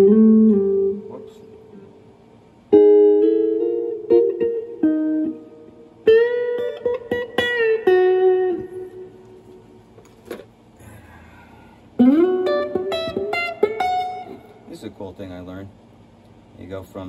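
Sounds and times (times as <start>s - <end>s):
clean electric guitar lead: 0.0s - 2.1s, 2.7s - 9.2s, 12.0s - 14.7s.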